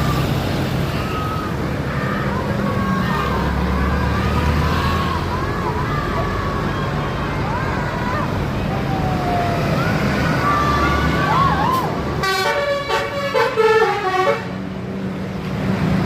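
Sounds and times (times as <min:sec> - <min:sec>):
bus engine running: 0:00.0 - 0:16.0
multi-tone bus horn tune: 0:12.2 - 0:14.8.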